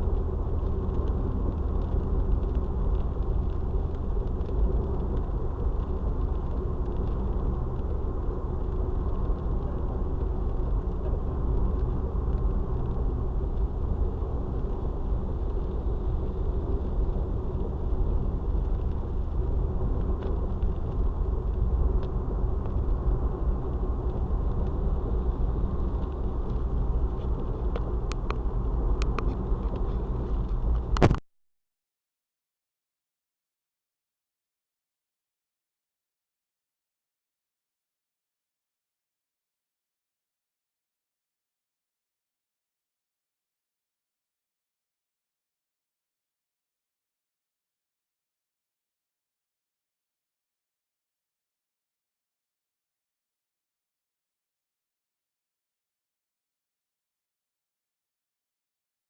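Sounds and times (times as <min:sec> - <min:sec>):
car road and engine rumble: 0:00.0 - 0:31.2.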